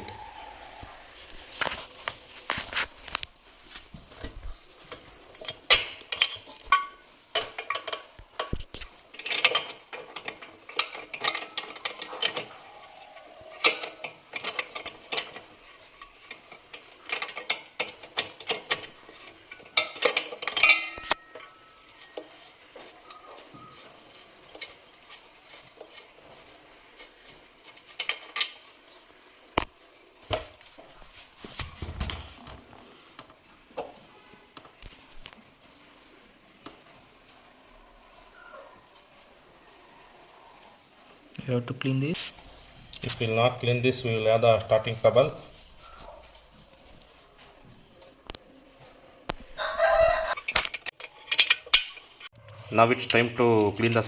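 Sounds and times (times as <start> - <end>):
metal hand tools clanking: 5.4 - 28.8, 50.4 - 54.0.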